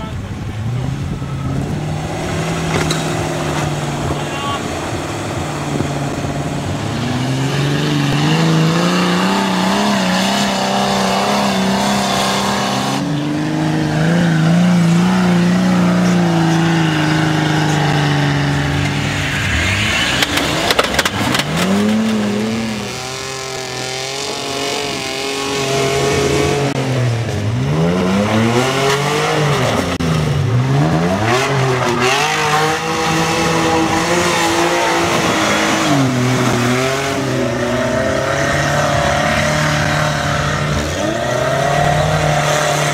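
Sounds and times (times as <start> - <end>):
off-road vehicle engine revving: 0.0 - 42.9
clatter of knocks: 20.2 - 22.2.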